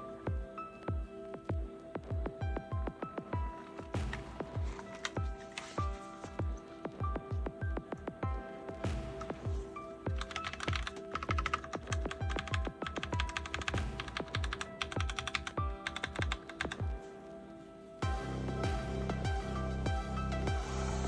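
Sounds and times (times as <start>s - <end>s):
background music with beat: 0.0s - 21.0s
mechanical keyboard typing: 10.1s - 16.9s.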